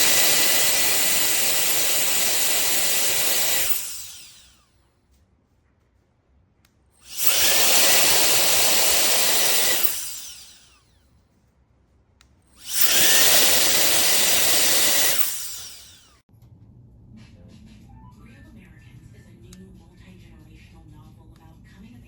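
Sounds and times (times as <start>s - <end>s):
electric air duster fan whine: 0.0s - 4.7s, 7.0s - 10.9s, 12.6s - 16.2s.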